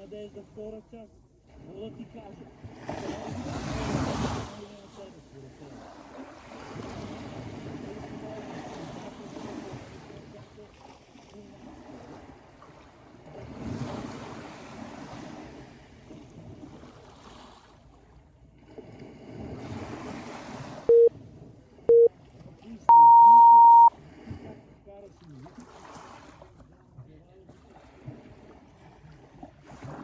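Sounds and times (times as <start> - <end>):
sea waves breaking on shore: 0.0 - 26.7, 27.4 - 30.0
interval timer beeps: 20.9 - 21.1, 21.9 - 22.1, 22.9 - 23.9.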